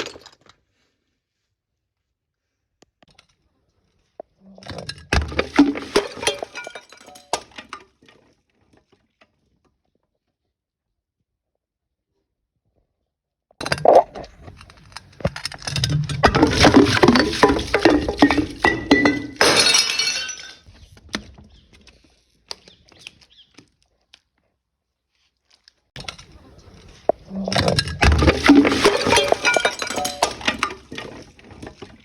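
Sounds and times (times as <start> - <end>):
glass bottle smashing: 5.2 - 7.5, 15.8 - 20.7, 27.6 - 31.2
glass crunching: 5.2 - 7.5, 13.8 - 20.7, 26.0 - 31.8
glass shards clinking: 15.6 - 20.6, 27.6 - 31.2.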